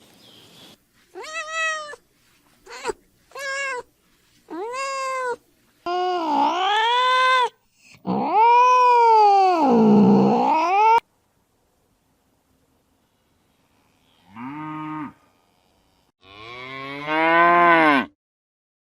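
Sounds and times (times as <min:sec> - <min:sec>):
cat meowing: 0:01.1 - 0:02.0, 0:02.6 - 0:03.9, 0:04.5 - 0:07.5.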